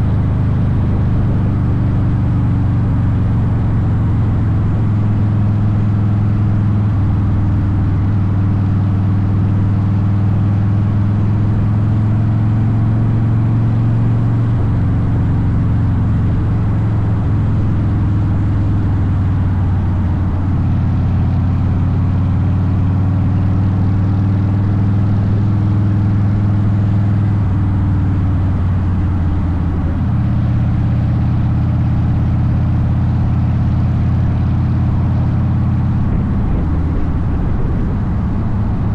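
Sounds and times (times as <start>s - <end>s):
motorcycle engine droning: 0.0s - 38.9s.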